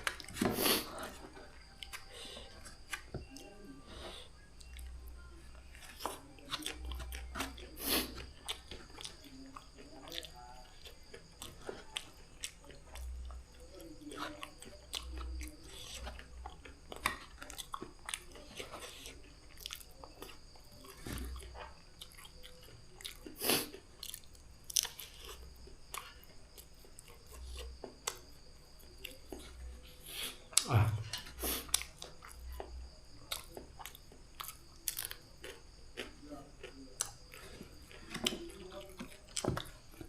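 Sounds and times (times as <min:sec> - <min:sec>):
person chewing and slurping noodles: 0:14.0 - 0:32.7, 0:33.3 - 0:40.0.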